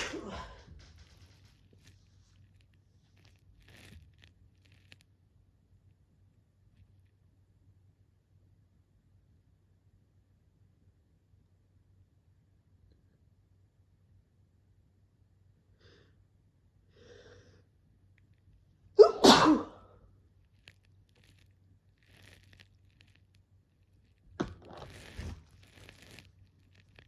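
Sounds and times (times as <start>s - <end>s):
person sneezing: 0.0s - 0.7s, 19.0s - 20.0s
noisy rustling: 0.0s - 6.0s, 20.3s - 27.0s.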